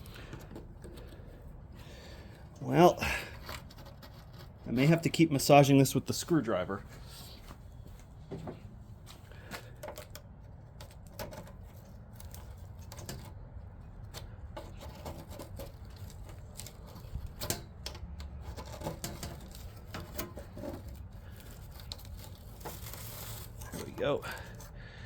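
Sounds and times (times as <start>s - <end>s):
screwdriver scraping metal: 3.3s - 5.5s, 9.8s - 24.8s.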